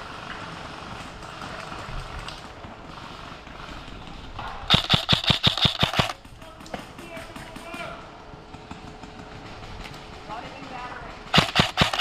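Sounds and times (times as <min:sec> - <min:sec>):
airsoft gun firing burst: 0:04.7 - 0:06.3, 0:11.3 - 0:12.0.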